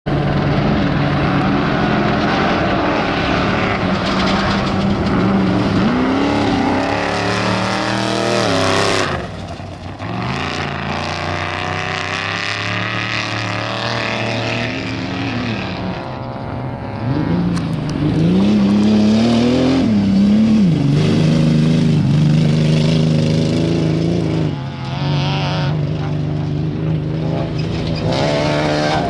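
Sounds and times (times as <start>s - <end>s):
off-road engines revving: 0.1s - 29.0s.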